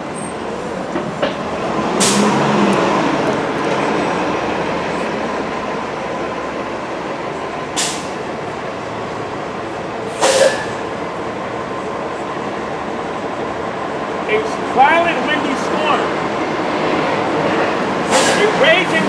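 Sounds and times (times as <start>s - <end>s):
vehicle ride rumbling: 0.0s - 19.0s
short sharp hiss: 10.2s - 10.7s.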